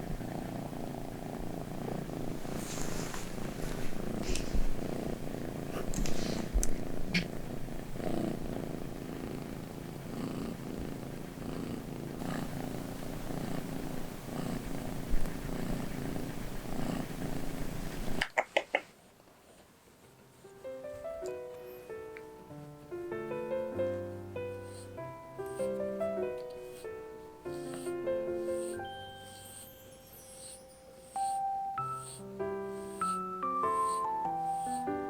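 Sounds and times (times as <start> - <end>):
kitten purring: 0.0 - 18.9, 23.2 - 35.0
faint clicks and rustles: 2.3 - 4.9, 5.8 - 7.4.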